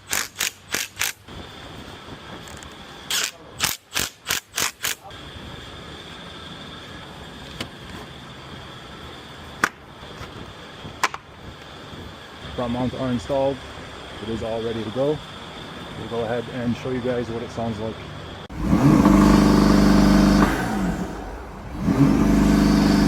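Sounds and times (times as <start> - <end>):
hand ratchet wrench clicking: 0.0 - 1.2, 2.4 - 5.1.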